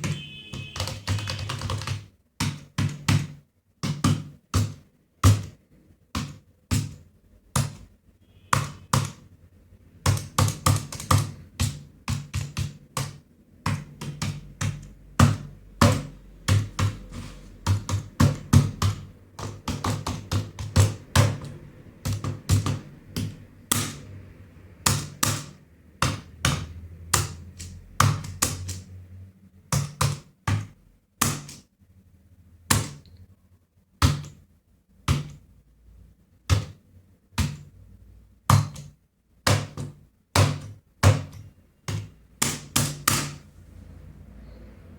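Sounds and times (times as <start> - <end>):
typing on computer keyboard: 0.0 - 24.2, 24.8 - 29.0, 29.6 - 31.7, 38.5 - 43.4.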